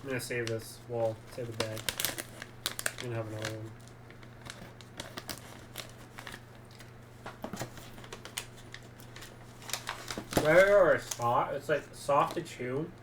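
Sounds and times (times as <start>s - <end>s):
plastic bag crinkling: 0.0s - 11.5s
steady low hum: 0.0s - 13.0s.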